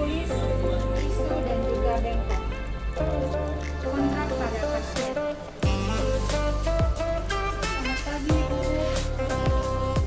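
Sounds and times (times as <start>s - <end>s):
background music with drum beat: 0.0s - 10.0s
deep drum hit: 5.6s - 10.0s.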